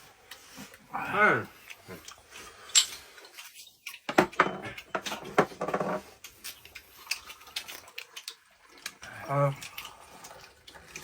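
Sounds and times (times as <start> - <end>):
chopsticks tapping plates and bowls: 4.1 - 6.0.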